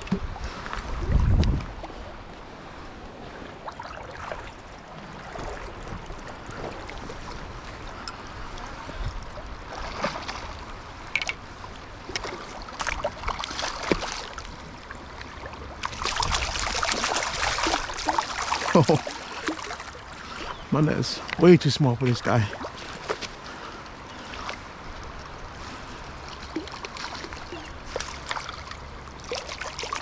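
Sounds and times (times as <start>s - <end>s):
stream rushing: 0.0s - 30.0s
fish splashing in water: 15.2s - 20.5s, 26.3s - 30.0s.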